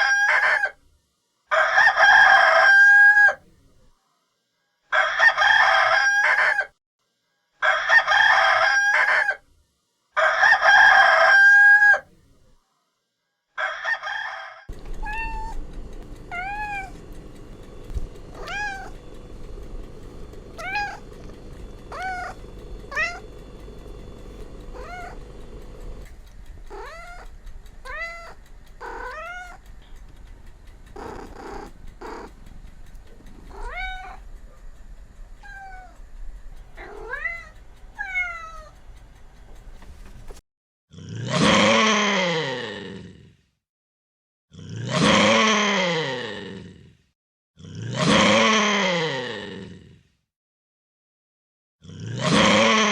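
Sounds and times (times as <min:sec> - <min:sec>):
rooster crowing: 0:00.0 - 0:00.8, 0:01.5 - 0:03.4, 0:04.9 - 0:06.7, 0:07.6 - 0:09.4, 0:10.2 - 0:12.1, 0:13.6 - 0:15.6, 0:20.5 - 0:26.0, 0:26.7 - 0:29.6
cat meowing: 0:14.9 - 0:15.6, 0:16.3 - 0:17.1, 0:18.3 - 0:19.0, 0:20.6 - 0:21.3, 0:21.9 - 0:23.3, 0:24.4 - 0:25.3, 0:26.7 - 0:29.7, 0:31.0 - 0:32.3, 0:33.5 - 0:34.2, 0:35.4 - 0:36.0, 0:36.8 - 0:38.7.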